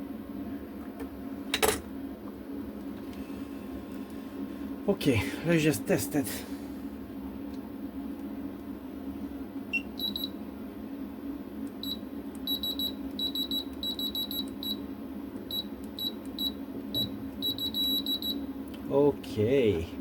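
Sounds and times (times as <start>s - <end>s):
multimeter beeping: 9.7s - 10.3s, 11.8s - 14.8s, 15.5s - 18.4s.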